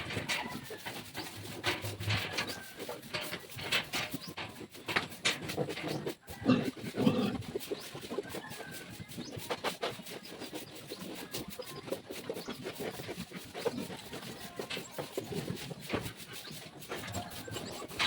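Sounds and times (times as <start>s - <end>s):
pigs grunting: 0.0s - 8.6s.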